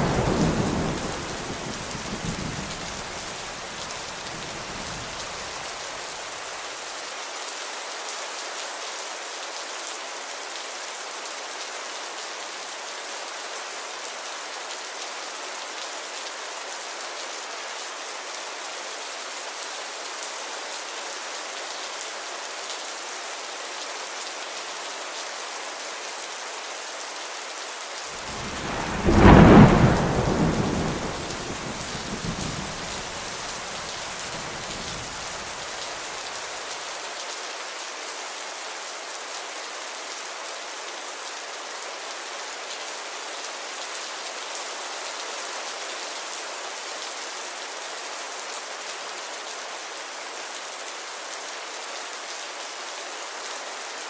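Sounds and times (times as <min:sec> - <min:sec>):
thunder crack and rumble: 0:00.0 - 0:03.5, 0:28.2 - 0:35.5
steady rain falling: 0:00.0 - 0:54.0.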